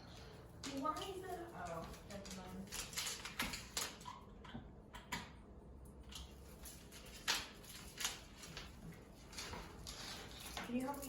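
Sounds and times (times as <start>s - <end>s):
tree branches rustling and clicking: 0.6s - 4.1s, 6.1s - 11.0s.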